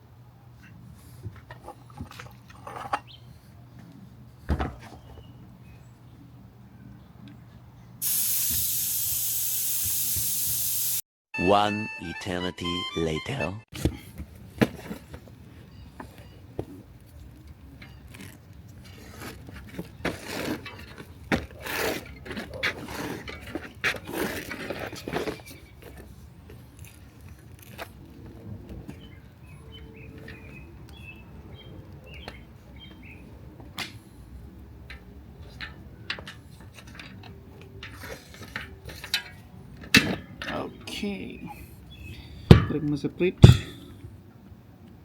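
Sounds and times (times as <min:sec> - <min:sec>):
tyre rubbing and scraping: 0:18.2 - 0:25.6.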